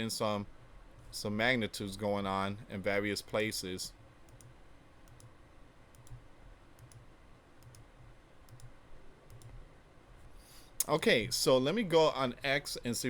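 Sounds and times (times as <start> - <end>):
computer mouse clicks: 4.3 - 5.3, 5.9 - 6.2, 6.8 - 9.6.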